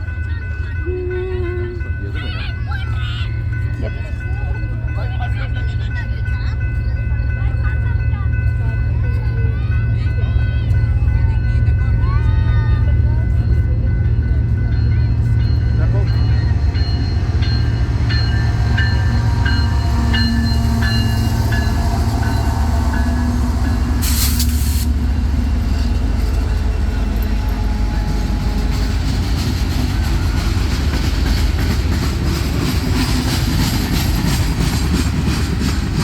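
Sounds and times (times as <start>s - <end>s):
train rumbling: 0.0s - 36.0s
wheels clacking over rail joints: 12.5s - 36.0s
brief hiss: 24.0s - 24.9s.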